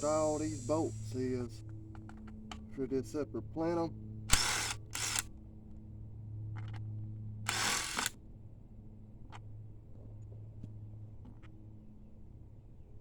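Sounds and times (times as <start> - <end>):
socket wrench ratcheting: 7.5 - 8.1.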